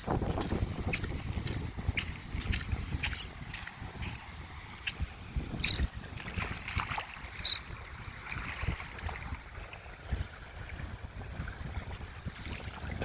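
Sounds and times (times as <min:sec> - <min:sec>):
footsteps on wet sand: 0:00.0 - 0:05.9
wind rumbling on microphone: 0:00.0 - 0:13.0.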